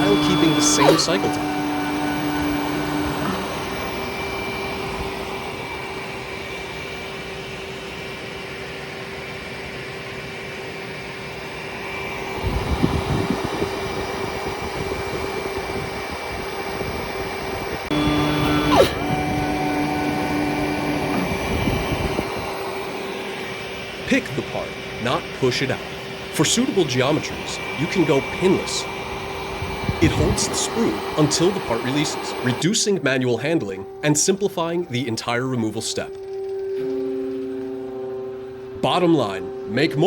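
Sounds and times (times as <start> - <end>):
motor tone sweeping down: 0.0 - 7.4, 17.5 - 32.6
high whine: 0.0 - 9.4, 10.6 - 40.0
machine mechanical hum: 0.0 - 39.9.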